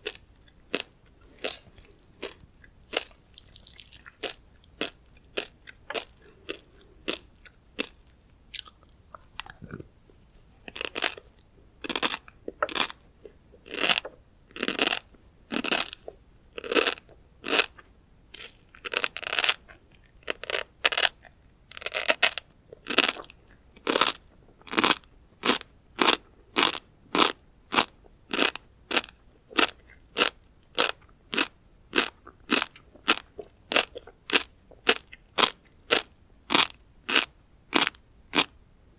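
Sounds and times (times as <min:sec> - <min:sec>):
chewing crunchy fish roe: 0:00.0 - 0:38.6.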